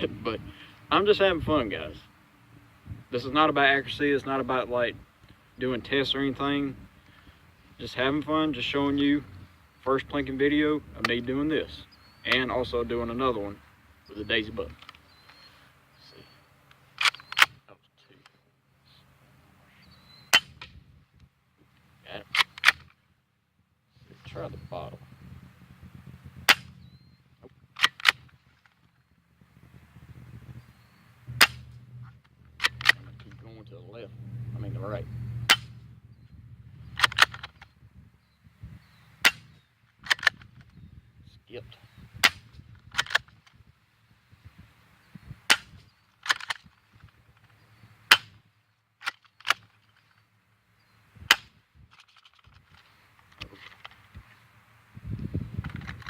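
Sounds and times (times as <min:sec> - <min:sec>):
bb gun snapping: 0:27.8 - 0:28.8, 0:31.3 - 0:31.7, 0:32.6 - 0:33.2, 0:37.0 - 0:37.7, 0:39.2 - 0:40.5, 0:45.5 - 0:46.8, 0:48.1 - 0:48.4, 0:49.0 - 0:49.7, 0:51.3 - 0:52.6.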